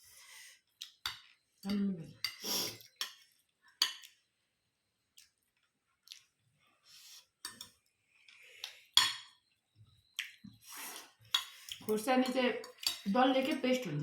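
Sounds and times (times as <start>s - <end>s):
soft eating sounds: 0.0s - 13.8s
cutlery clinking on dishes: 3.8s - 4.2s, 7.4s - 7.8s, 9.0s - 9.4s, 11.3s - 13.7s.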